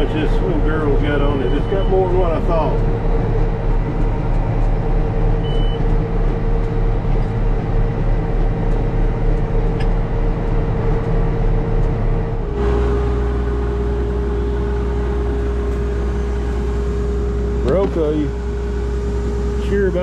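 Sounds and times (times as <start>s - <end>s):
tractor diesel engine running: 0.0s - 20.0s
short high beep: 5.4s - 5.8s.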